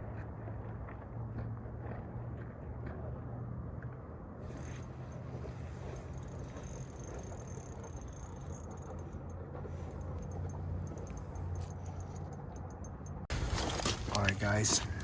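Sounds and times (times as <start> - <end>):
low mechanical hum: 0.0 - 15.0
faint clicks and rattles: 4.5 - 13.3.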